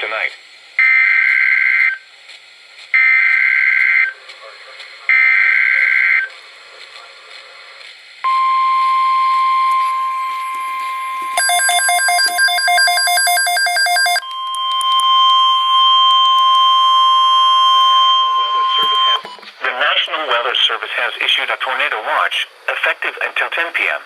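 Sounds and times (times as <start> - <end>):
radio hiss: 0.0 - 0.5, 2.3 - 8.2, 17.5 - 24.0
rapid beeping alarm: 0.8 - 2.0, 3.0 - 4.2, 5.1 - 6.3, 8.3 - 19.4
steady single-pitch alert tone: 8.3 - 19.3.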